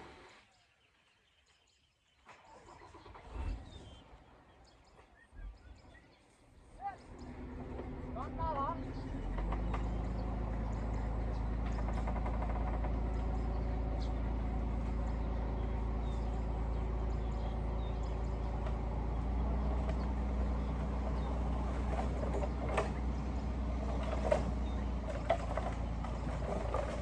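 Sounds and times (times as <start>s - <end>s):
heavy diesel engine running: 6.8s - 27.0s.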